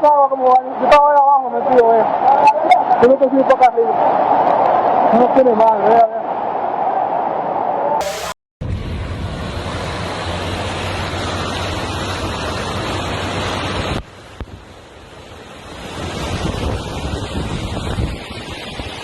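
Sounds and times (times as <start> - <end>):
rushing floodwater: 0.0 - 6.2, 8.0 - 19.0
wind buffeting microphone: 15.4 - 19.0.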